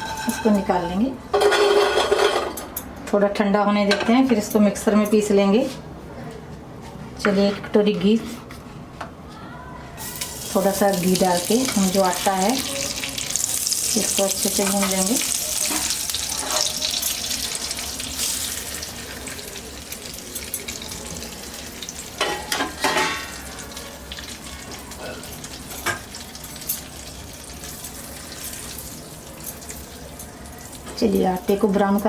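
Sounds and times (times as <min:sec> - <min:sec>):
ghee sizzling in a pan: 0:10.0 - 0:32.0.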